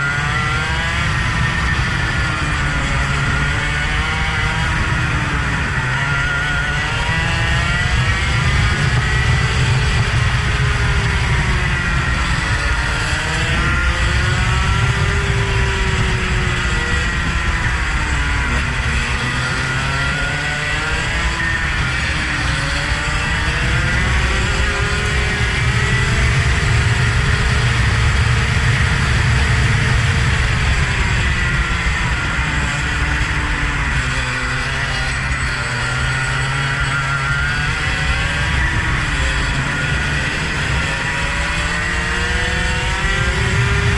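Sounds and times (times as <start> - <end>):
vehicle engine revving: 0.0 - 43.9
heavy low rumble: 22.3 - 33.9.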